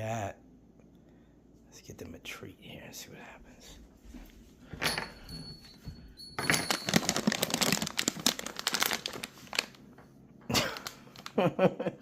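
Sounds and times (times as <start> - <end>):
plastic bag crinkling: 6.4 - 9.9, 10.5 - 11.5.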